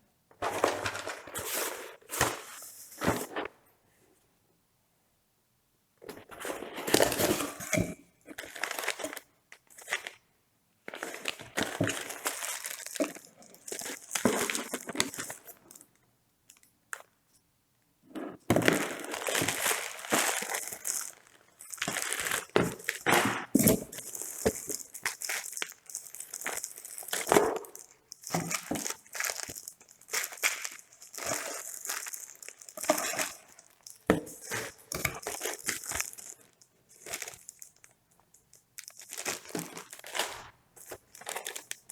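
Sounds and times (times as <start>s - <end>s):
packaging crinkling and rustling: 0.4s - 3.5s, 8.3s - 10.2s, 10.9s - 15.8s, 18.5s - 37.9s, 38.8s - 41.9s.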